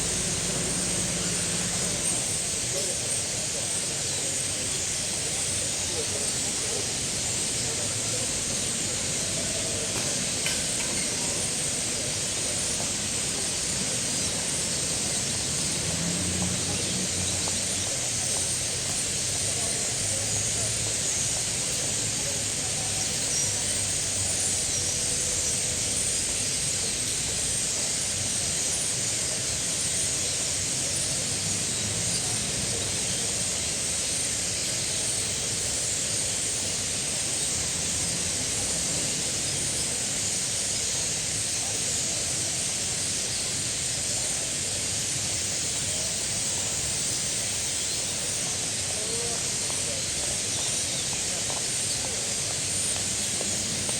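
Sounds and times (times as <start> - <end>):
starlings chattering: 0.0 - 53.9.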